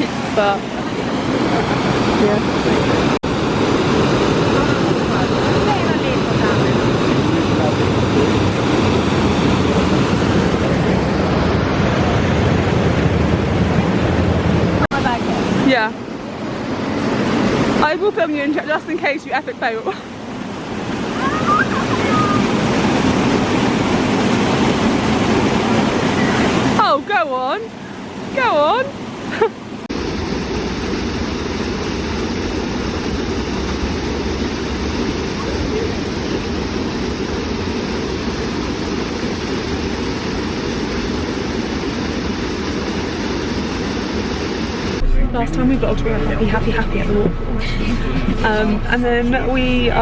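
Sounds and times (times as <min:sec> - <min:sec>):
waterfall rushing: 0:29.9 - 0:45.0.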